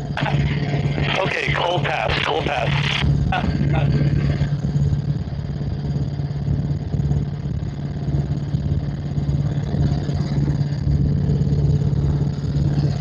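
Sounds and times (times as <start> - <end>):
helicopter rotor and engine drone: 0.0 - 13.0.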